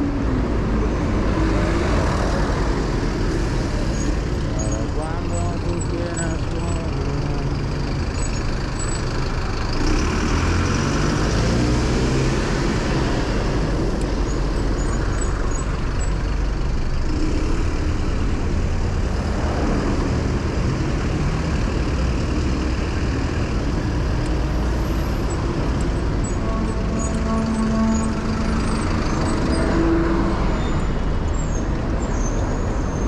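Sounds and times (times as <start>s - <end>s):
low road rumble: 0.0s - 33.0s
vehicle engines: 0.0s - 33.0s
engine rising in pitch: 21.4s - 32.3s.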